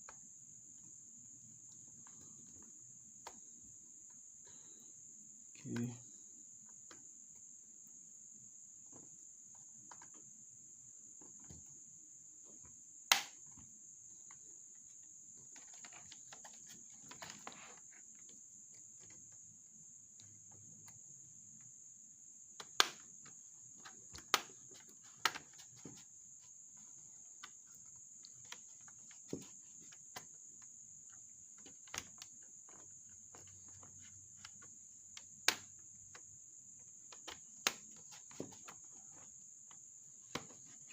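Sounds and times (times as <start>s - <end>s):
clicks and taps on laptop parts: 15.4s - 19.4s, 22.5s - 40.9s.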